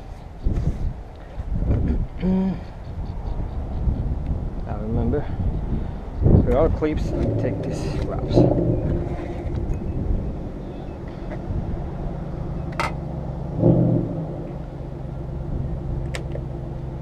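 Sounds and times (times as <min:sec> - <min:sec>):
engine idling hum: 0:00.0 - 0:17.0.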